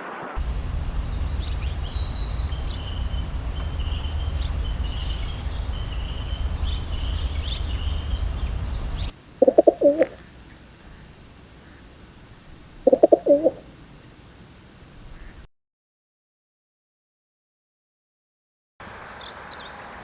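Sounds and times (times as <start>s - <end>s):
high thin bird calls: 0.2s - 15.5s
low rumble: 0.4s - 9.2s
low-pitched bird call: 0.4s - 15.5s.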